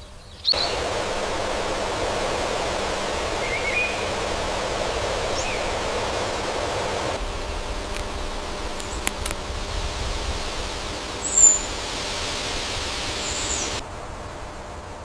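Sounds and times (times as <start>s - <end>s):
steady rushing noise: 0.5s - 15.0s
faint bird chirps: 11.2s - 11.8s.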